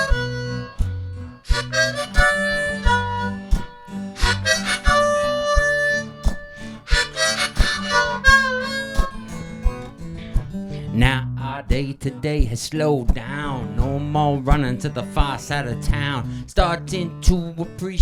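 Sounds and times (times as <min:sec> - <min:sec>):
harmonica solo: 0:00.0 - 0:09.9
foot-stomp beat: 0:00.0 - 0:10.5
bass line: 0:00.0 - 0:16.1
strummed guitar: 0:00.0 - 0:18.0.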